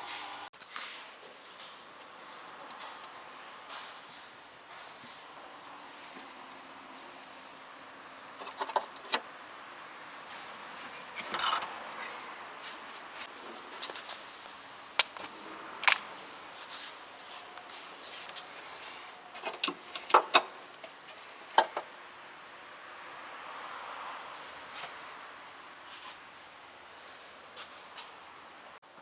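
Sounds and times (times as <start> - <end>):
car clicks and knocks: 19.4 - 21.9.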